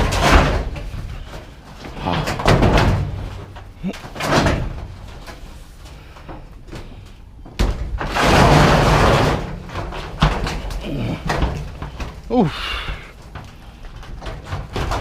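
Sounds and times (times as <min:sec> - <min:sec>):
scrap metal scraping clatter: 0:07.9 - 0:12.2.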